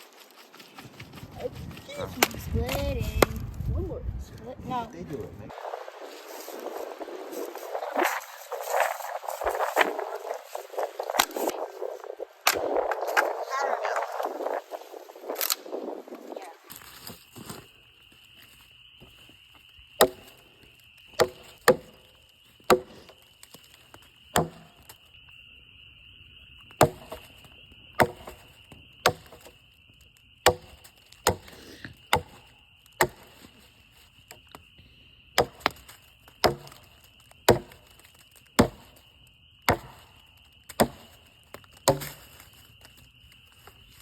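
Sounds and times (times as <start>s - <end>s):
hatchet chopping wood: 20.0s - 20.4s, 21.1s - 22.1s, 22.7s - 23.7s, 24.3s - 25.0s, 26.8s - 27.4s, 28.0s - 29.6s, 30.4s - 33.5s, 35.4s - 39.0s, 39.7s - 42.6s.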